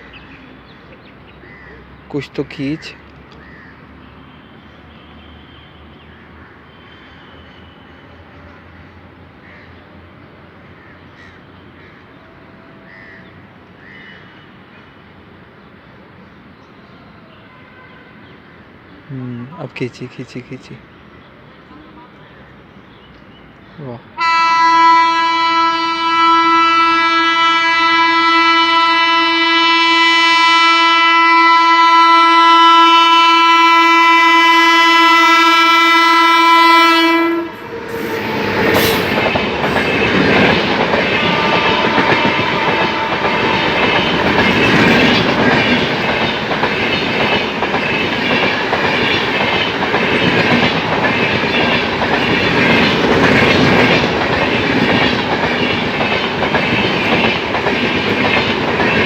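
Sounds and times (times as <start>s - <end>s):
locomotive horn blast: 17.4s - 18.3s, 24.2s - 40.4s, 41.0s - 45.0s
train wheels clattering over rails: 37.7s - 59.0s.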